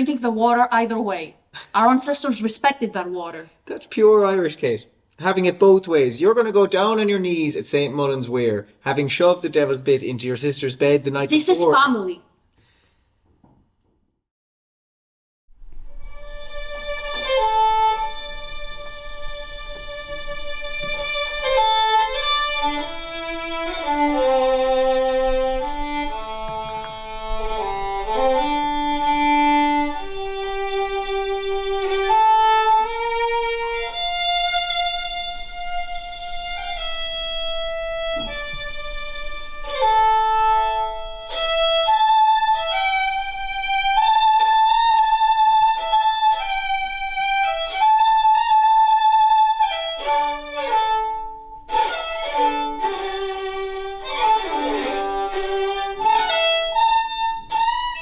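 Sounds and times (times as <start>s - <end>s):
solo violin melody: 15.6s - 58.0s.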